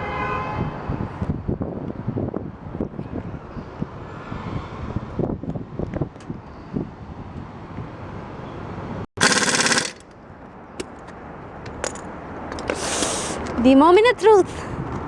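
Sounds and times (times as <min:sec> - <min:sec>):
impact wrench rattling: 0:09.2 - 0:10.1.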